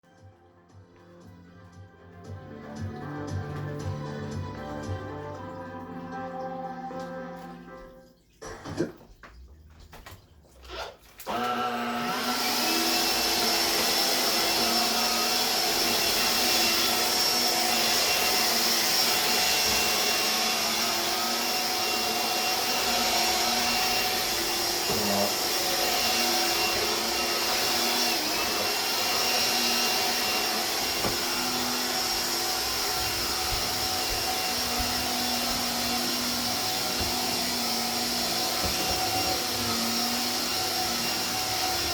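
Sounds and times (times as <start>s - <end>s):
vacuum cleaner motor running: 11.2s - 41.9s.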